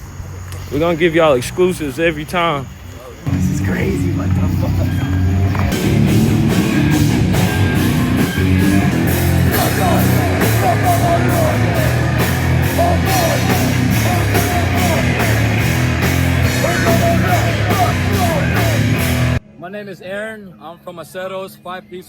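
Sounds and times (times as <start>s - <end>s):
heavy guitars and bass: 3.2s - 19.4s
drum kit cymbal hits: 3.3s - 19.4s
heavy metal music: 3.3s - 19.4s.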